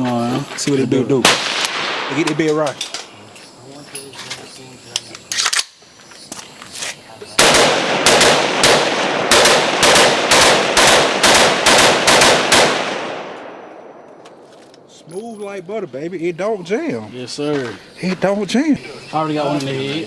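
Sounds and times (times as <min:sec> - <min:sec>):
gunshot echo: 0:01.2 - 0:02.7, 0:07.4 - 0:14.4
rapid rifle fire: 0:01.3 - 0:02.3, 0:07.4 - 0:13.4.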